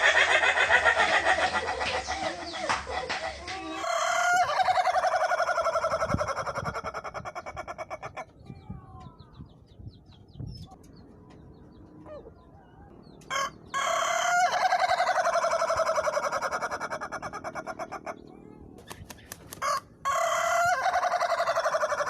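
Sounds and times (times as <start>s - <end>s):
roosters crowing: 0.0s - 8.3s, 13.2s - 18.2s, 19.6s - 22.0s.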